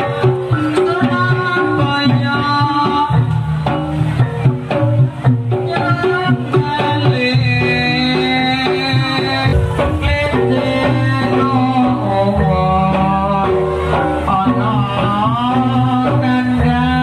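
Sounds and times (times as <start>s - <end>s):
hand drum strokes: 0.0s - 17.0s
melody of held pitched notes: 9.1s - 12.8s.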